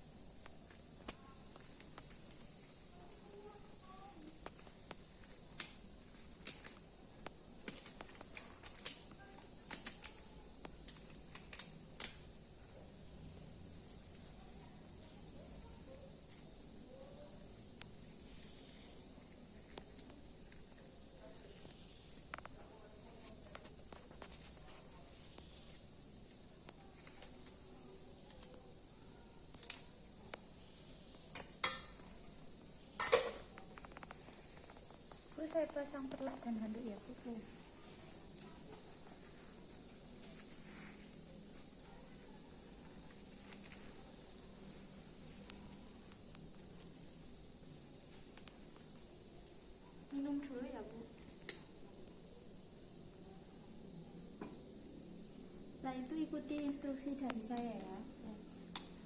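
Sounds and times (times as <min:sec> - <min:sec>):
small objects clicking: 0:04.2 - 0:12.5, 0:29.4 - 0:36.9
clinks of equipment being handled: 0:33.0 - 0:33.7.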